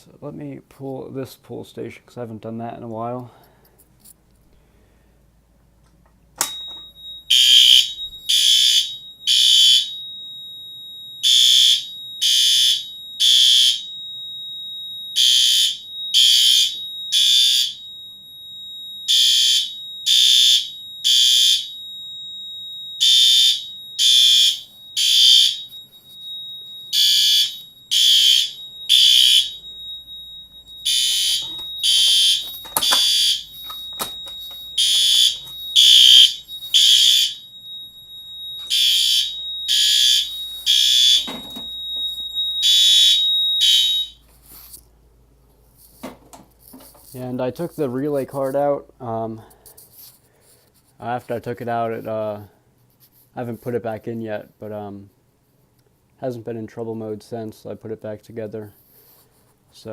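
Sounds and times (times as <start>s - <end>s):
fire alarm pull station click: 6.4s - 10.0s, 15.1s - 17.8s, 23.0s - 29.7s, 30.6s - 37.4s, 38.4s - 44.2s
alarm horns blaring: 7.3s - 10.0s, 11.2s - 14.0s, 14.6s - 18.3s, 19.0s - 44.3s
steady high-pitched tone: 13.8s - 44.2s.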